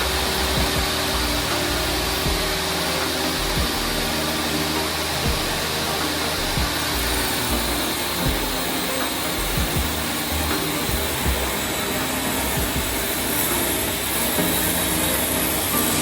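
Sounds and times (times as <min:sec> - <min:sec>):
woodworking power tool running: 0:00.0 - 0:16.0
short low thumps: 0:02.2 - 0:02.7, 0:05.2 - 0:05.7.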